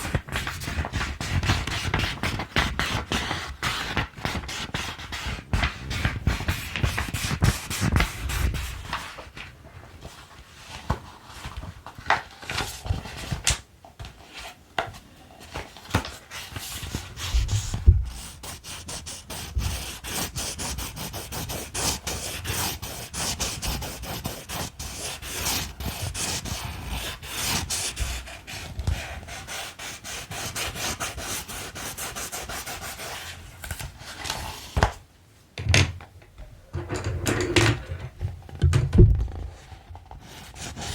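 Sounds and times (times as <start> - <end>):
colored pencils scratching on paper: 16.3 - 33.4, 40.2 - 40.9.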